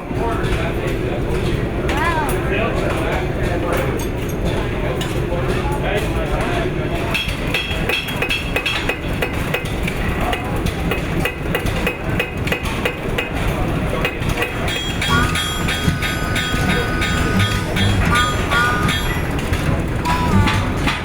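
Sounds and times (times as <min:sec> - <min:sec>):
steady high tone: 0:14.7 - 0:21.0.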